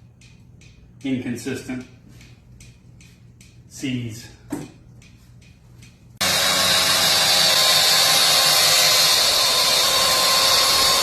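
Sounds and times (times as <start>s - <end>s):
wire wheel grinding metal: 6.2s - 11.0s.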